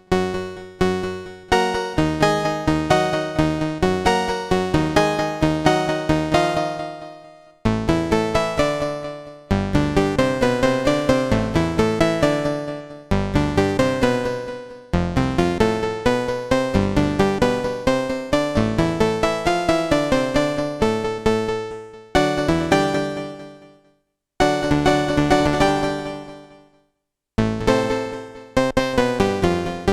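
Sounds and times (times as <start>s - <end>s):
synthesizer notes and chords: 0.0s - 23.8s, 24.4s - 26.7s, 27.4s - 29.9s.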